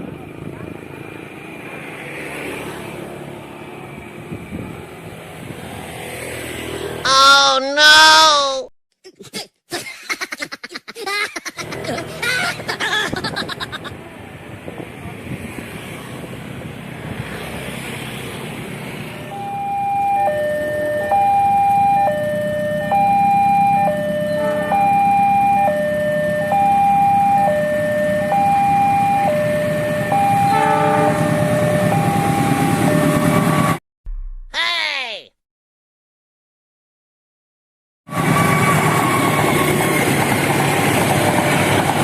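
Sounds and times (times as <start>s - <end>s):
vehicle rumble: 11.6s - 30.3s
two-tone hi-lo siren: 19.2s - 33.8s, 38.1s - 40.0s.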